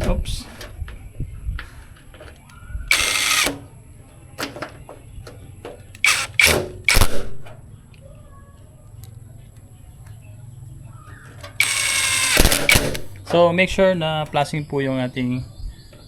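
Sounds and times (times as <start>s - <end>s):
power drill bursts: 2.9s - 3.6s, 6.0s - 7.1s, 11.6s - 13.2s.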